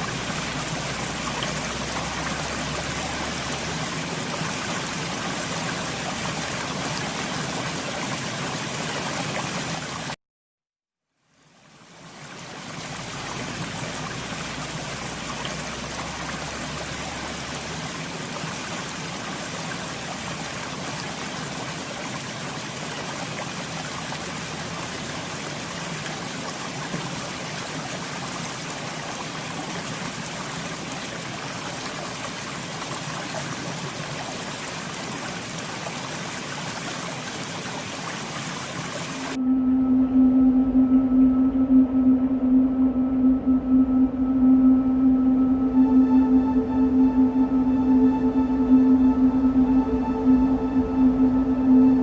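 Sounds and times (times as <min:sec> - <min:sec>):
waterfall rushing and splashing: 0:00.0 - 0:10.2, 0:11.7 - 0:39.4.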